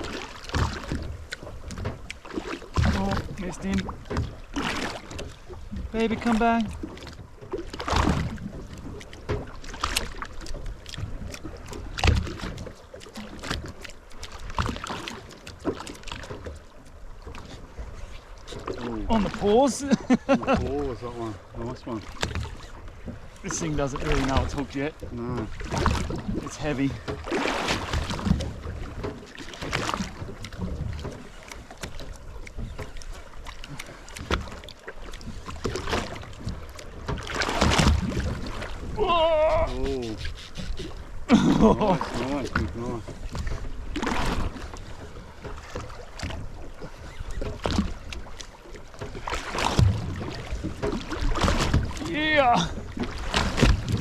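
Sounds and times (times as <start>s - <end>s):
water against hull: 0.0s - 54.0s
knocks on a boat: 0.4s - 12.8s, 20.4s - 20.9s, 47.4s - 52.2s, 52.9s - 54.0s
wind buffeting microphone: 52.7s - 54.0s.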